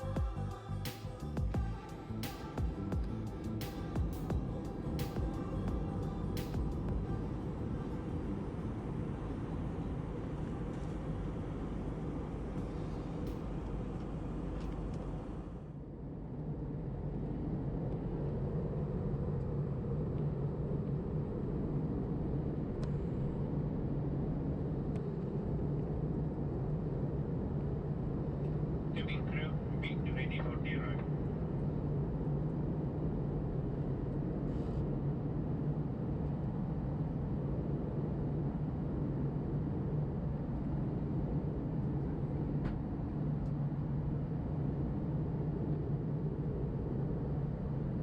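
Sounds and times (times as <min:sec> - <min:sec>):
airplane cabin engine rumble: 0:00.0 - 0:48.0
steady low hum: 0:00.0 - 0:48.0.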